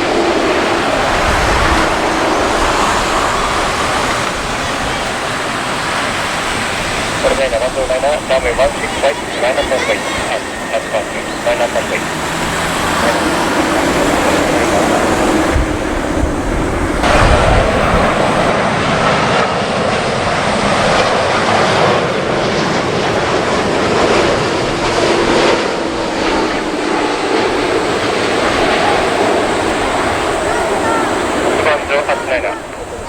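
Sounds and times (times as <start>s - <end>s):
jet airliner engines rushing: 0.0s - 33.0s
wind buffeting microphone: 0.0s - 33.0s.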